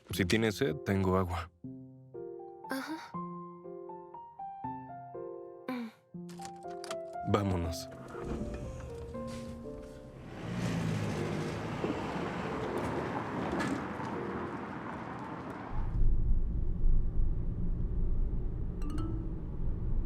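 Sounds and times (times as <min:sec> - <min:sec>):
low road rumble: 0:07.6 - 0:20.0
car engine and tyre rush: 0:08.0 - 0:18.8.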